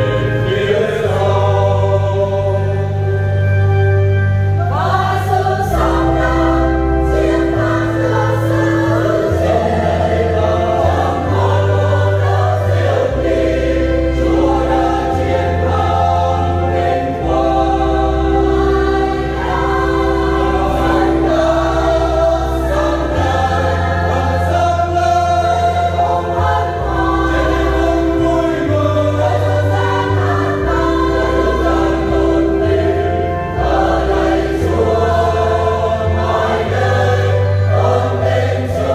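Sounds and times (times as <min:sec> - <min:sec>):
church choir singing a hymn: 0:00.0 - 0:38.9
long held bass notes: 0:00.0 - 0:38.9.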